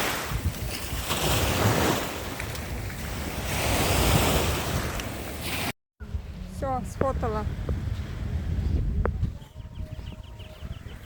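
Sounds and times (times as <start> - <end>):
sea surf washing onto shore: 0.0 - 5.7
wind rumbling on microphone: 0.0 - 11.0.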